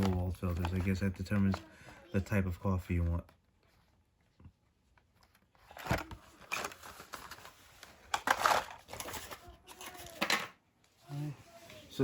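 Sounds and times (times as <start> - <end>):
packaging rustling and crinkling: 0.0 - 1.8, 5.2 - 10.4.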